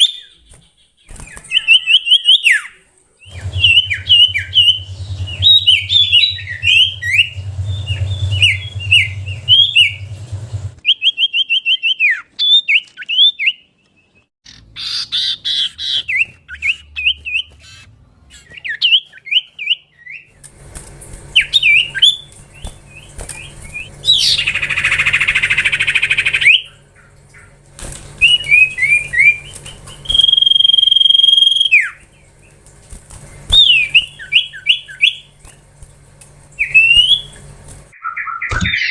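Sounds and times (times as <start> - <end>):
bird whistling: 1.4 - 10.1, 28.2 - 32.0, 33.5 - 35.3, 36.6 - 37.4.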